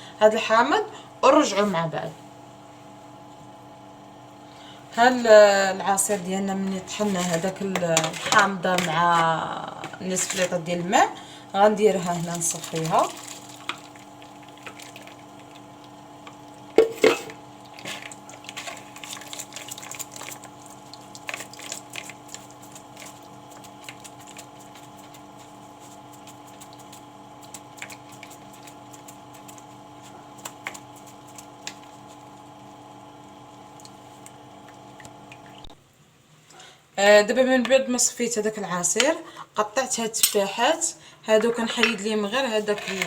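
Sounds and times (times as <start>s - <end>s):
steady hum: 0.0s - 37.0s
liquid dripping through a sieve: 11.9s - 16.8s, 17.5s - 32.5s, 33.6s - 35.7s
kitchenware clink: 16.8s - 17.4s.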